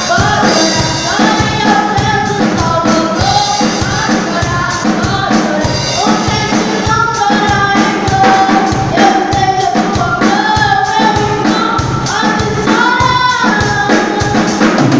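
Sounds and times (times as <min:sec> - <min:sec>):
group singing gospel: 0:00.0 - 0:07.2
steady drum beat: 0:00.0 - 0:14.9.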